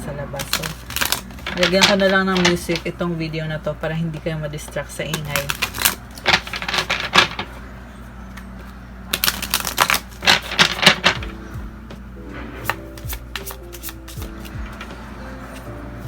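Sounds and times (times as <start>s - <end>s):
steady low hum: 0.0s - 16.0s
cards being shuffled: 0.4s - 2.9s, 5.0s - 11.4s, 12.0s - 15.8s.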